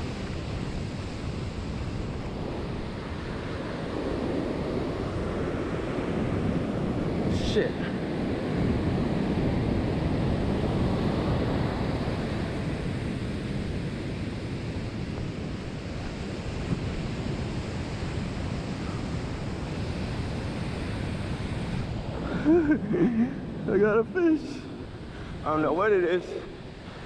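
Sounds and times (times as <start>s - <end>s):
ocean surf on beach: 0.0s - 27.0s
wind buffeting microphone: 0.0s - 27.0s.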